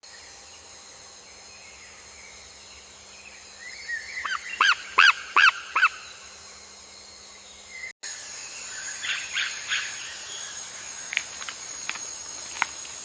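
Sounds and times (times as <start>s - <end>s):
high insect hum: 0.0s - 13.0s.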